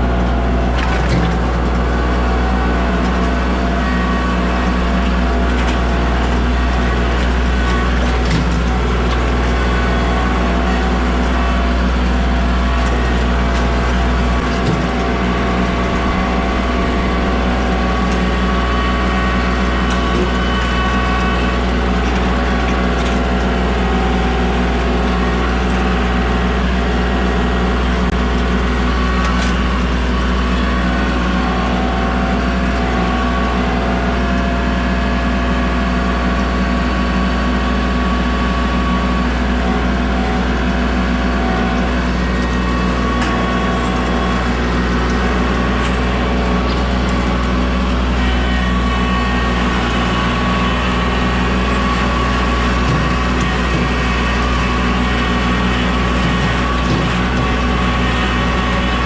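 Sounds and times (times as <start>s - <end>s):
heavy engine running: 0.0s - 59.0s.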